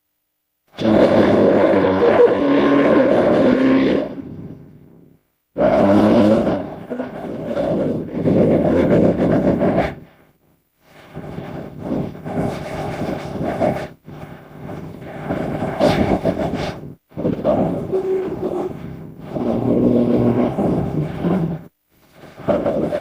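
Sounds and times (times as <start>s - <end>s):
deep monster roars: 0.8s - 4.3s, 5.6s - 9.0s, 17.4s - 21.6s.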